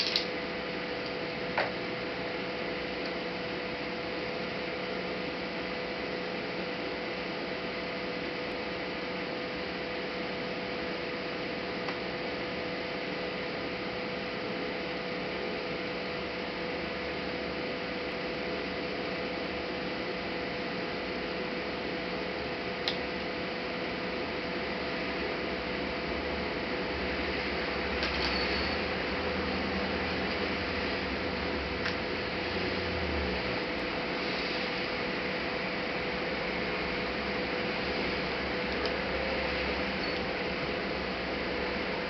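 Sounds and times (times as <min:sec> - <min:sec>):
sharp click: 0:00.0 - 0:00.3, 0:22.8 - 0:23.0
electrical hum: 0:00.0 - 0:42.0
hiss: 0:34.1 - 0:34.8.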